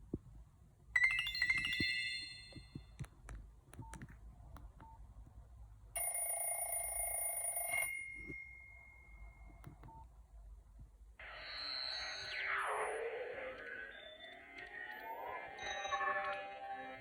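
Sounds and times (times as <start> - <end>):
phone ringtone: 1.0 - 3.0, 6.0 - 9.5
phone clicks: 1.4 - 4.9.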